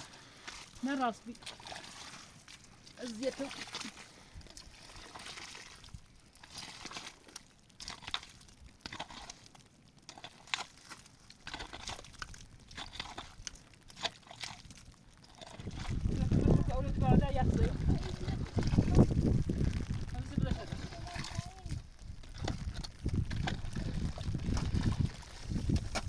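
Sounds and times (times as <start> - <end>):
short crunching and rustling: 21.9 - 26.0.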